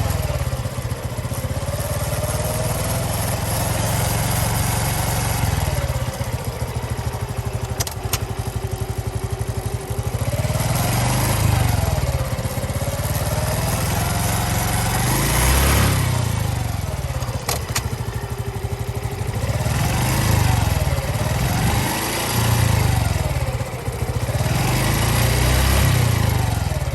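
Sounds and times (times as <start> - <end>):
motorcycle engine revving: 0.0 - 26.9
sharp clicks: 7.6 - 8.5, 17.2 - 18.1.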